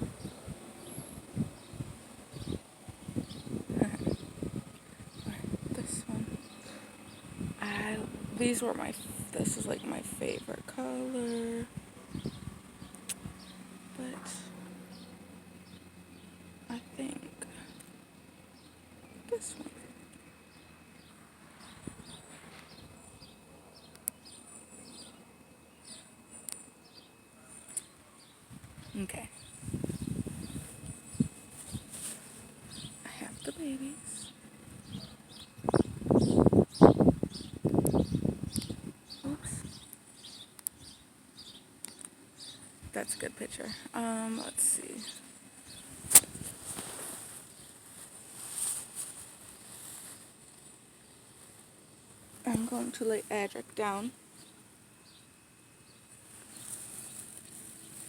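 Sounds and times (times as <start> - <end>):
soft rustling and handling: 29.8 - 32.6, 45.2 - 53.3, 56.1 - 58.0
sharp click: 46.1 - 46.3.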